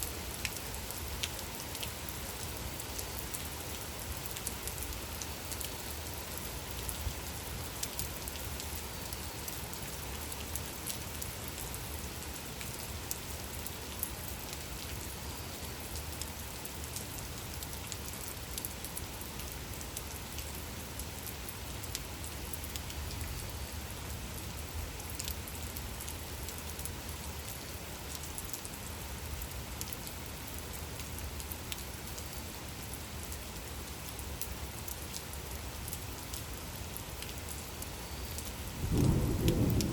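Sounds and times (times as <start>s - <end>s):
raindrops ticking on surface: 0.0s - 39.9s
rain hissing: 22.3s - 39.9s.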